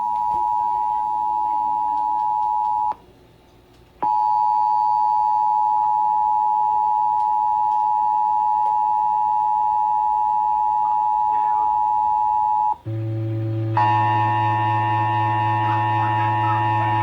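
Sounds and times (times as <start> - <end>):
loud steady alert tone: 12.8 - 17.0.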